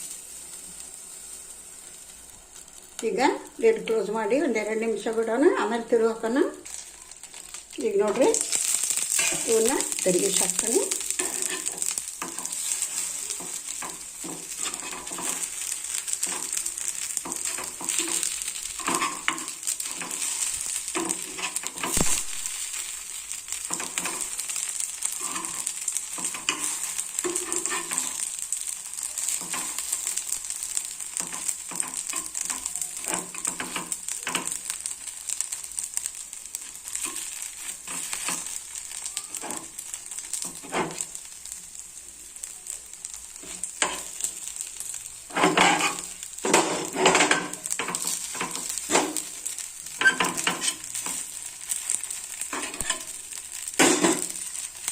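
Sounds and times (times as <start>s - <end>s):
dumplings sizzling in oil: 0.0s - 54.9s
utensil knocking and scraping a pan: 11.1s - 22.3s, 25.2s - 28.2s, 45.3s - 49.3s.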